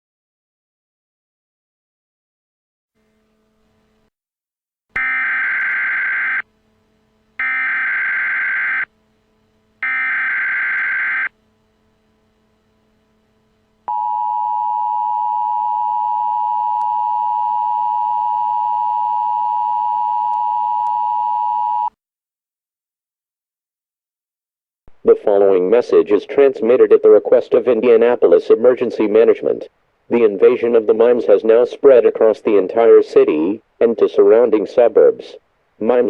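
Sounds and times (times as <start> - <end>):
two-tone attention signal: 13.9 - 21.9.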